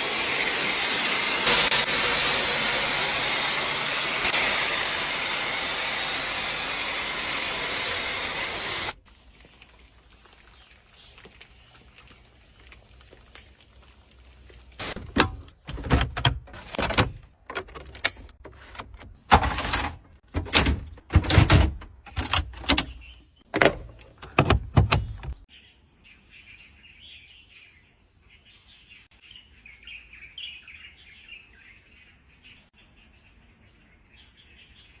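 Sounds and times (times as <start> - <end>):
loud irregular knocks and thuds: 23.6 - 25.4.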